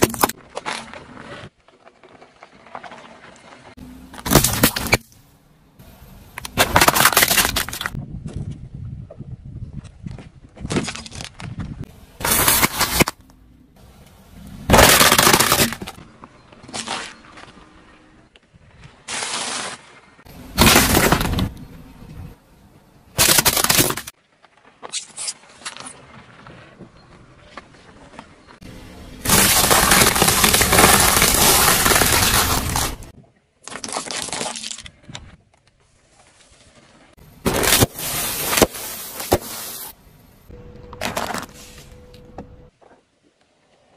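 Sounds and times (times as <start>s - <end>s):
car crushing brittle object: 0.0s - 3.3s, 4.1s - 5.2s, 6.4s - 8.0s, 10.6s - 11.5s, 12.2s - 13.9s, 14.6s - 17.6s, 19.0s - 21.6s, 23.1s - 24.2s, 29.1s - 35.0s, 37.4s - 40.0s, 41.0s - 41.6s.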